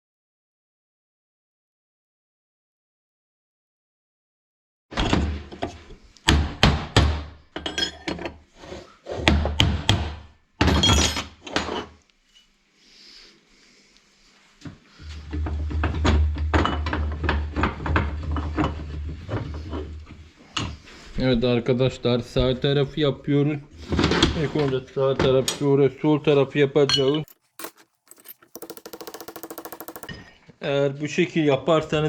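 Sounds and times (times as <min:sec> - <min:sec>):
tools knocking on metal: 0:27.6 - 0:30.1.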